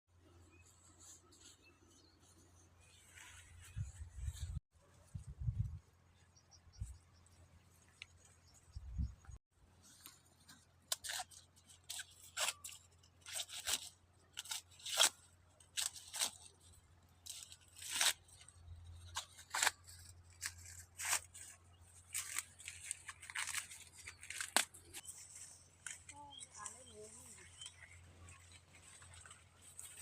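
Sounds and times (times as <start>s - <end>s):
dry corn leaves crackling: 9.8s - 30.0s.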